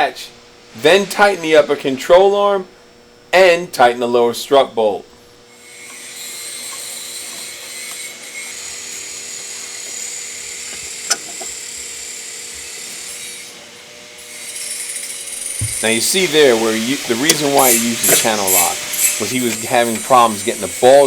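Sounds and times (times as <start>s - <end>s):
air ratchet whining: 9.6s - 12.0s, 14.4s - 21.0s.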